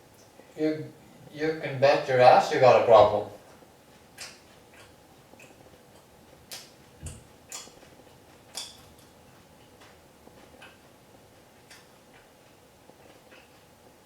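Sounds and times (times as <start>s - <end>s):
person chewing crunchy food: 3.5s - 13.8s.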